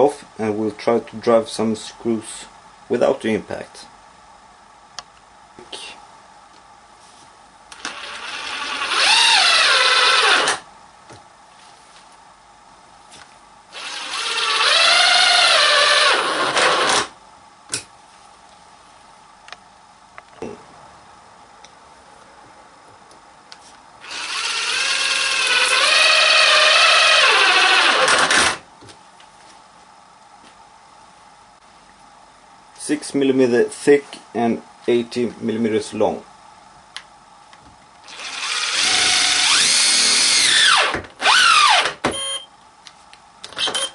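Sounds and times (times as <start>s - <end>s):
cordless driver motor whine: 7.7s - 10.6s, 13.7s - 17.1s, 24.0s - 28.6s, 38.0s - 41.9s.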